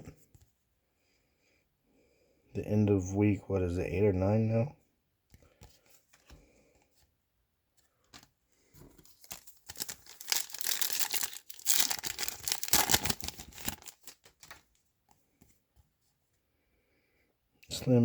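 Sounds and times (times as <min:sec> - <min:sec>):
wrapper tearing and crinkling: 0:09.1 - 0:14.6.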